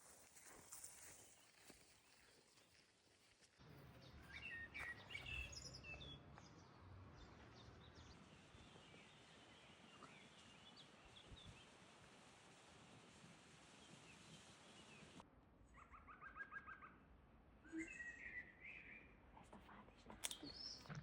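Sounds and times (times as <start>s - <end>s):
small birds chirping: 3.8s - 11.9s, 13.7s - 21.0s.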